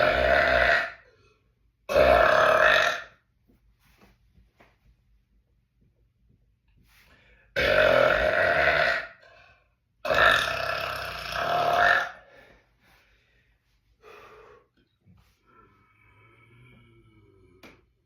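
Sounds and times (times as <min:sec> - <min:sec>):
man burping: 0:00.0 - 0:01.0, 0:01.9 - 0:03.2, 0:07.6 - 0:09.2, 0:10.0 - 0:12.2.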